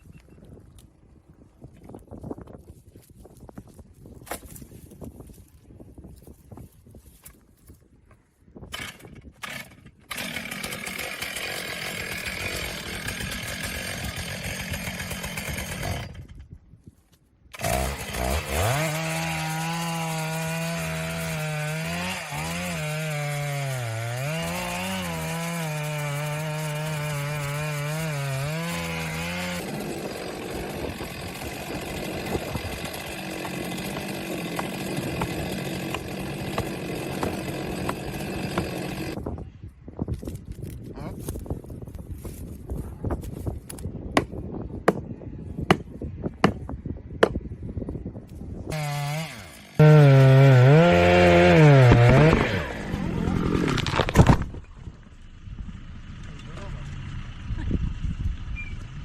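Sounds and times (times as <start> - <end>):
chainsaw cutting wood: 8.7 - 16.5, 17.5 - 39.2, 48.7 - 54.6.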